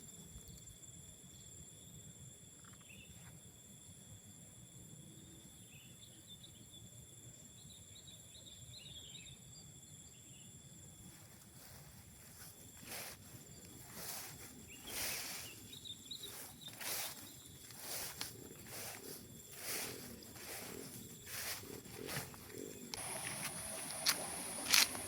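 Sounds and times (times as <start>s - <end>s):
insects droning: 0.0s - 25.0s
faint bird chirps: 2.6s - 3.2s.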